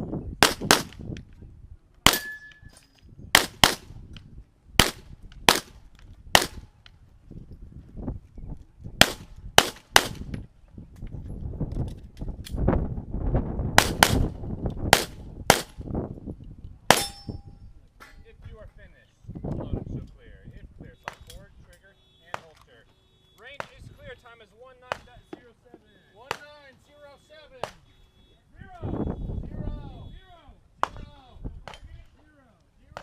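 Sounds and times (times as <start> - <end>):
pistol shots in double-taps: 0.4 - 1.0, 2.0 - 2.4, 3.3 - 3.9, 4.8 - 6.7, 9.0 - 10.3, 13.8 - 14.3, 14.9 - 15.8, 16.9 - 17.3.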